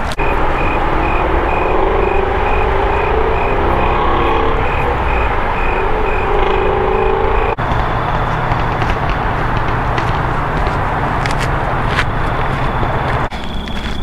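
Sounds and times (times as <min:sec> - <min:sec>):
reversing alarm beeping: 0:00.0 - 0:08.2, 0:12.0 - 0:14.0
engine running: 0:00.0 - 0:14.0.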